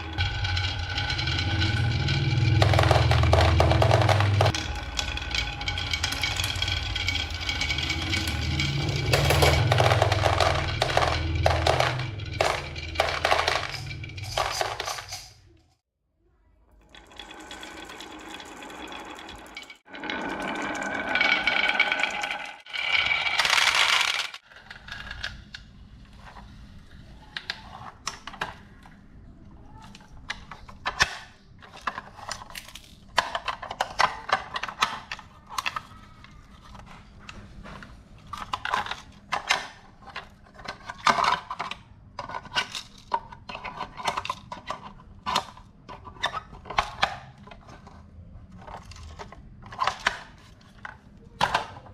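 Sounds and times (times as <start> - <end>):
marbles clattering down wooden run: 0.0 - 15.0, 16.8 - 24.4.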